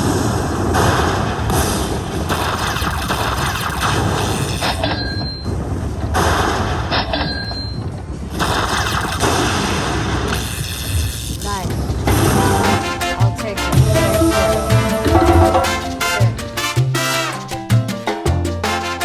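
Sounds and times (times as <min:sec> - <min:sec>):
slot machine game noise: 0:12.1 - 0:16.7.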